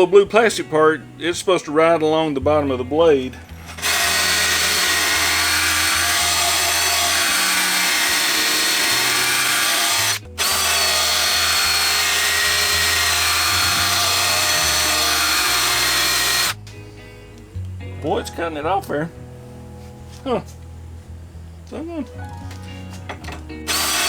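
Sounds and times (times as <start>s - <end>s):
drill grinding metal blade: 2.1s - 16.6s, 23.6s - 24.0s.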